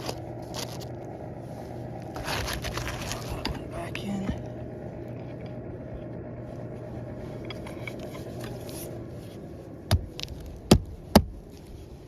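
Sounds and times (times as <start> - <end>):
steady low hum: 0.0 - 12.0
sharp knocks on shingle roof: 9.9 - 11.4.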